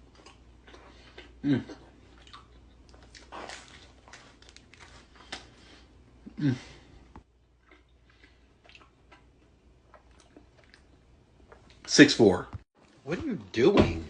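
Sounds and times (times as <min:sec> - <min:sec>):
person chewing pizza: 0:00.0 - 0:06.8, 0:07.4 - 0:11.8.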